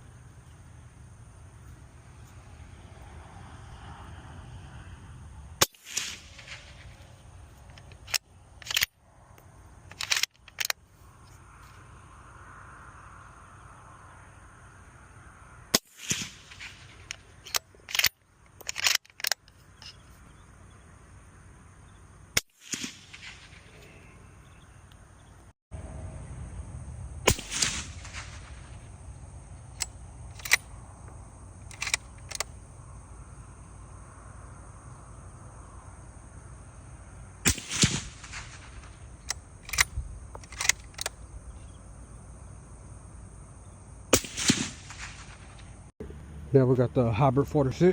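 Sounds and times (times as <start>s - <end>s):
suppressed rifle shots: 5.6s - 7.0s, 15.8s - 18.1s, 22.6s - 23.7s, 27.2s - 28.8s, 37.4s - 41.2s, 44.1s - 45.7s
mechanical clicks: 29.8s - 30.6s, 31.7s - 32.5s, 39.2s - 41.2s.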